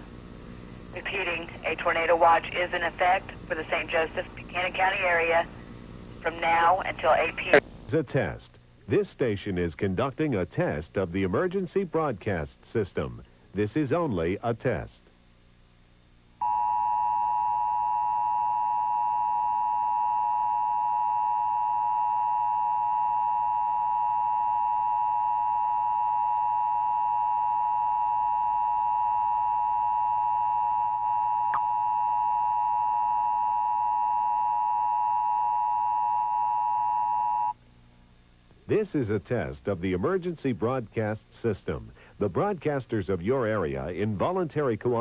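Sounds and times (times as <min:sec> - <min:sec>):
two-tone alarm signal: 0:16.4 - 0:37.6.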